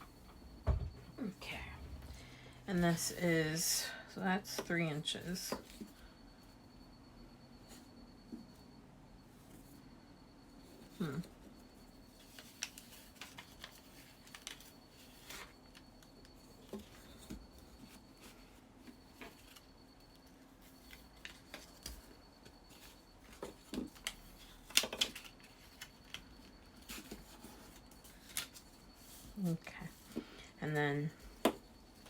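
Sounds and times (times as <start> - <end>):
paper and tools clicking and scraping: 12.2 - 15.8.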